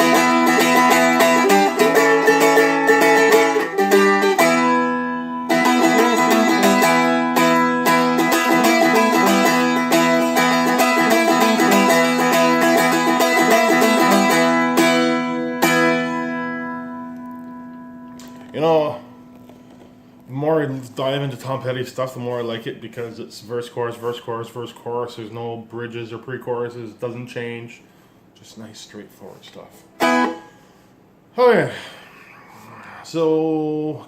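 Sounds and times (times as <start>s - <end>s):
strummed dulcimer chords: 0.0s - 21.7s.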